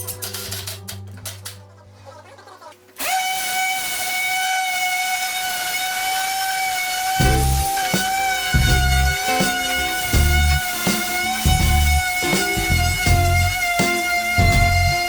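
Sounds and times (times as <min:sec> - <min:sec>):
background music: 0:00.0 - 0:03.0, 0:07.2 - 0:15.0.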